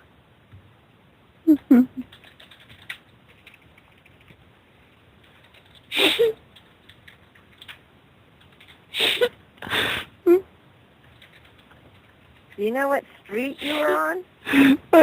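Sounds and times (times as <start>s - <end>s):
faint clicking and tapping: 2.0s - 8.9s, 11.0s - 13.6s.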